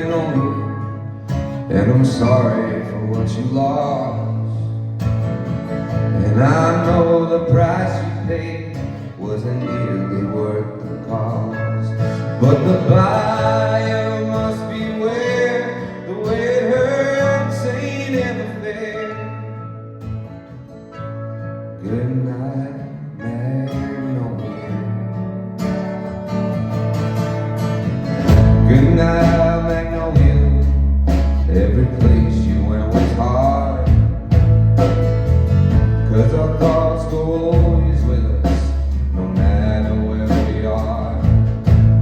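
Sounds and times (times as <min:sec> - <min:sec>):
held bass notes: 0:00.0 - 0:42.0
strummed acoustic guitar: 0:00.0 - 0:42.0
person singing: 0:06.2 - 0:19.5, 0:28.3 - 0:34.1, 0:36.0 - 0:41.6.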